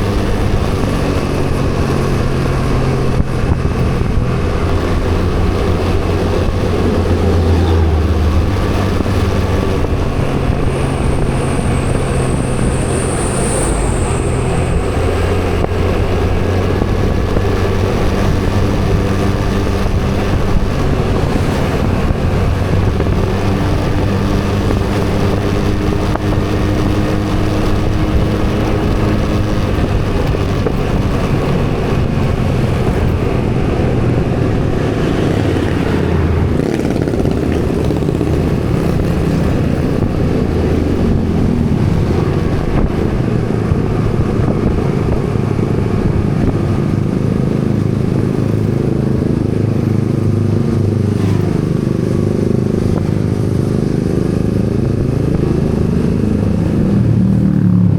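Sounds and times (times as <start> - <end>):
motorcycle engine running: 0.0 - 57.9
road and wind noise: 0.0 - 57.9
brief high whine: 10.2 - 16.2.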